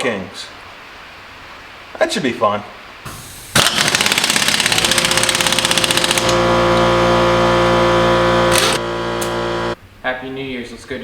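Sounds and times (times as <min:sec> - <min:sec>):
impact wrench hammering: 0:03.1 - 0:09.6
impact wrench whirring: 0:03.1 - 0:09.8.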